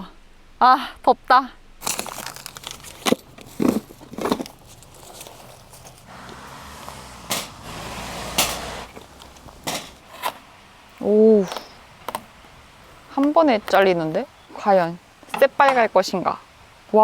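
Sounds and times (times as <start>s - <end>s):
kitchen gear knocks and clicks: 1.8s - 6.1s, 8.4s - 10.4s.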